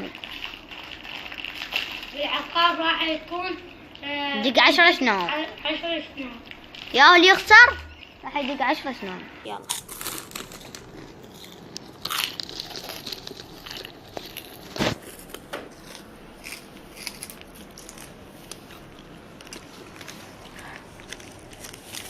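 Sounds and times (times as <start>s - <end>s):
chewing: 9.6s - 22.0s
potato chips crunching: 9.6s - 22.0s.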